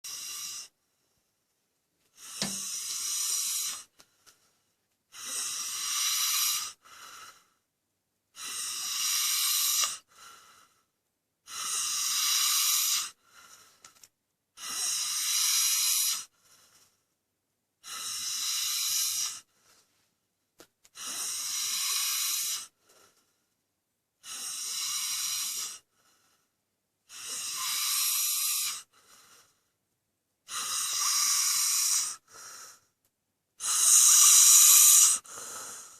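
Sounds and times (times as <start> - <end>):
person snoring: 0.0 - 0.8, 2.2 - 3.9, 5.1 - 7.5, 8.4 - 10.8, 11.5 - 13.7, 14.6 - 16.3, 17.8 - 19.5, 21.0 - 23.1, 24.2 - 25.9, 27.1 - 29.6, 30.5 - 32.9, 33.6 - 35.9.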